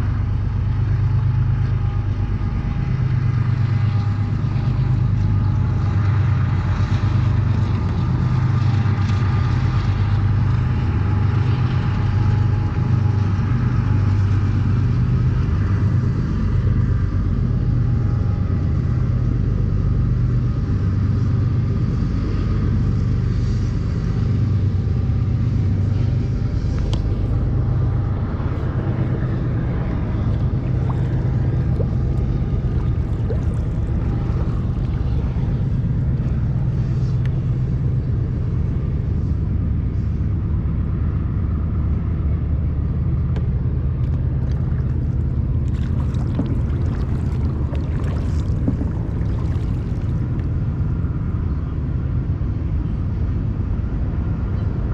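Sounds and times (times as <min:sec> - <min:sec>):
wind rumbling on microphone: 0:00.0 - 0:54.9
faint clicks or light splashes: 0:30.2 - 0:35.5, 0:43.3 - 0:50.5.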